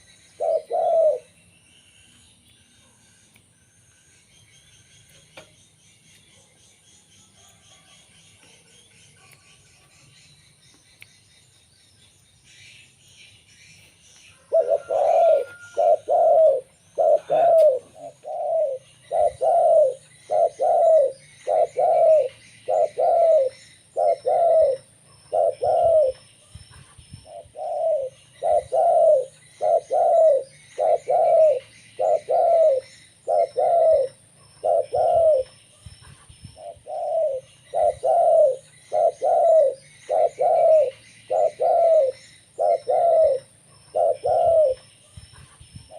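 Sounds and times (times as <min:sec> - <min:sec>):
dove cooing: 0:00.0 - 0:01.3, 0:14.4 - 0:26.2, 0:27.2 - 0:45.9.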